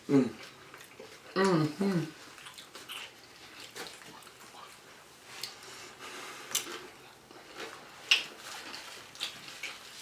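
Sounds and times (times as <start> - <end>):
person eating crunchy food: 0.4 - 10.0.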